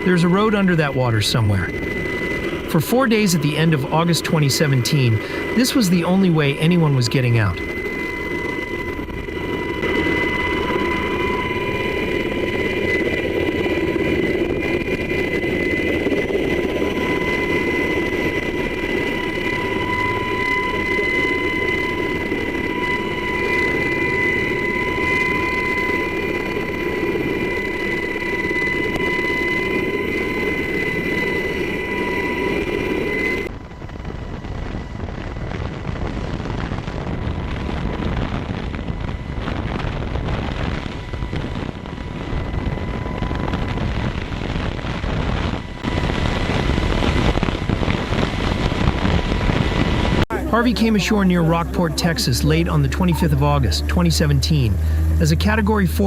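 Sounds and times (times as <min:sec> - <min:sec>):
helicopter rushing with high whine: 0:00.0 - 0:56.0
wind on microphone: 0:33.4 - 0:50.5.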